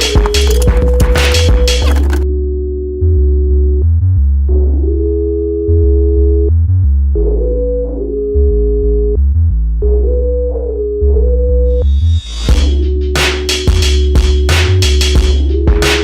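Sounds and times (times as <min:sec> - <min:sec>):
muffled electronic music: 0:00.0 - 0:03.8.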